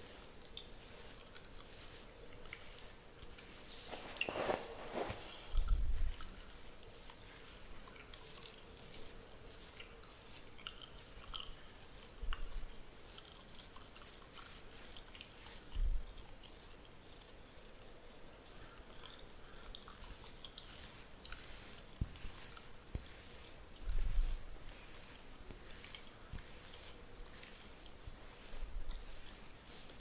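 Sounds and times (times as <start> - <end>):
fingernails scratching beard: 19.4 - 30.0.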